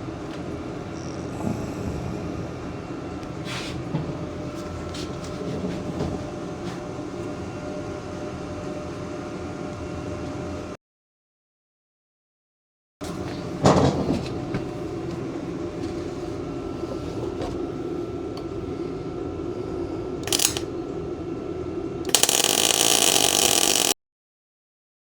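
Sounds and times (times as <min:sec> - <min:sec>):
steady background hum: 0:00.0 - 0:10.8, 0:13.0 - 0:23.9
welder arc crackling: 0:20.2 - 0:20.7, 0:22.1 - 0:24.0.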